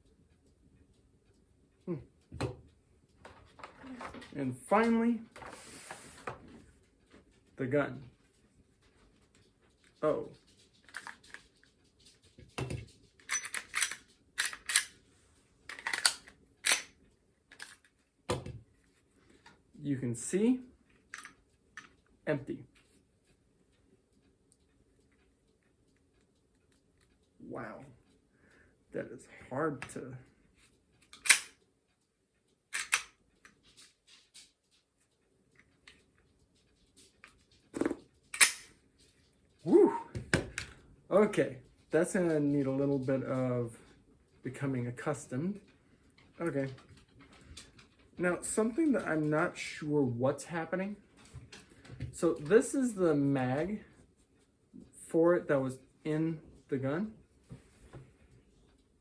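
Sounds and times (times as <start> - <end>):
pistol action clicking: 13.3 - 15.0, 15.7 - 17.8, 31.2 - 31.6, 32.7 - 33.2, 38.3 - 38.7.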